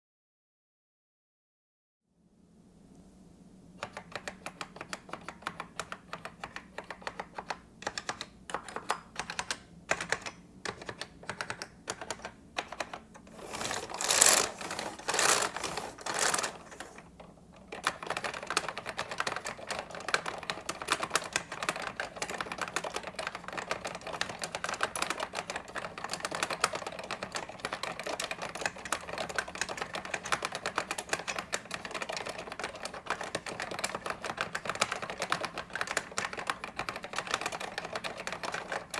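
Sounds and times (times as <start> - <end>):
keyboard typing: 3.8 - 38.9.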